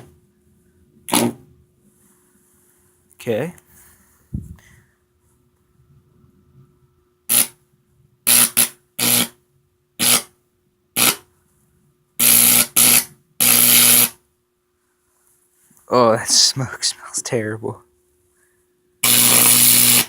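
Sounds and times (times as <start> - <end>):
faint transformer hum: 0.0 - 20.0
electric arcs buzzing and crackling: 7.3 - 7.6, 8.3 - 9.3, 11.0 - 11.2, 12.2 - 14.2, 19.0 - 20.0.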